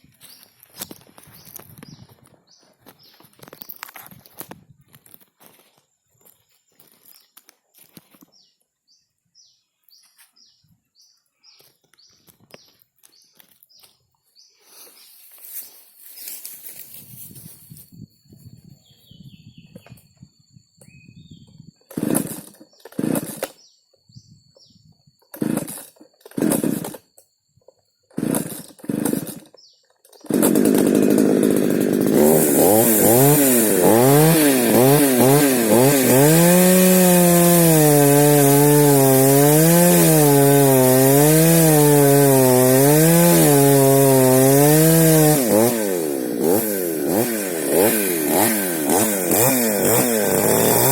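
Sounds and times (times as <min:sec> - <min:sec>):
chainsaw engine running: 0:21.8 - 0:23.6, 0:25.2 - 0:27.2, 0:28.1 - 0:50.9
chainsaw starter cord yanks: 0:21.8 - 0:23.6, 0:25.2 - 0:27.2, 0:28.1 - 0:50.9.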